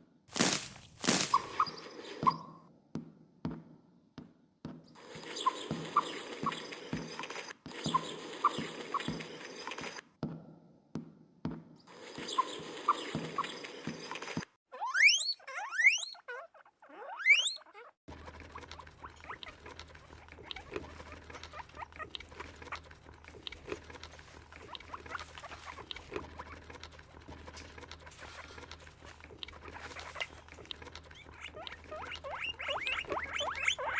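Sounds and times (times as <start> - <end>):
short squeaks: 14.1 - 18.0
small animals chewing clicks: 18.1 - 33.9.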